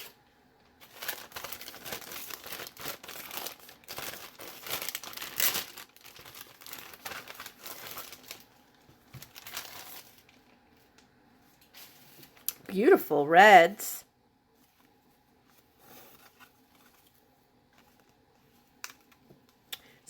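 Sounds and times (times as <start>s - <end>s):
packaging crinkling: 0.8s - 11.0s.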